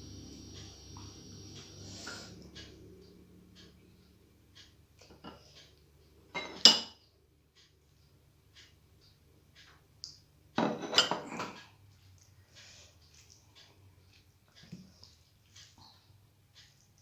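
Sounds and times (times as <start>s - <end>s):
tableware clattering and clinking: 6.3s - 7.0s, 10.6s - 11.7s.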